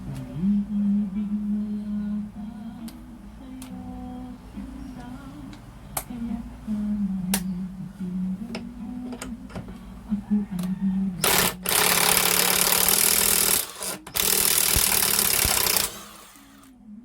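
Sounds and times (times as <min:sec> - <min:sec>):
impact driver hammering: 0:11.2 - 0:16.7.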